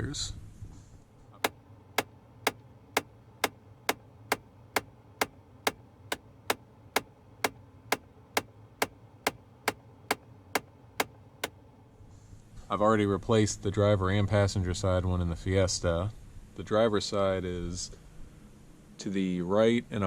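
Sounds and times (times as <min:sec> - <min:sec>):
actuator clicking in dashboard: 0:01.4 - 0:11.6.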